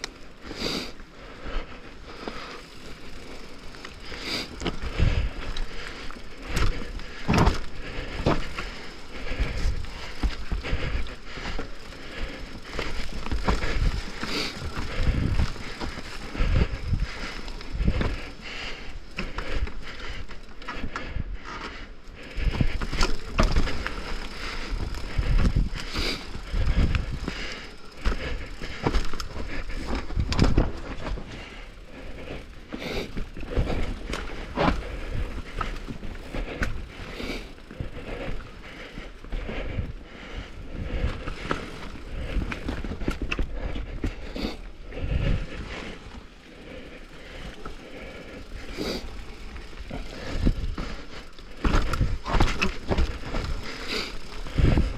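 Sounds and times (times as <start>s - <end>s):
tyres rolling on dirt and rock: 0.0s - 54.9s
bike clattering over bumps: 1.4s - 54.9s.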